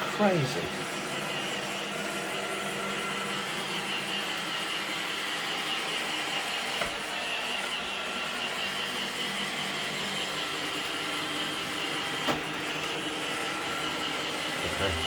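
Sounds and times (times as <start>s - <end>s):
robot vacuum motor whine: 0.0s - 15.0s.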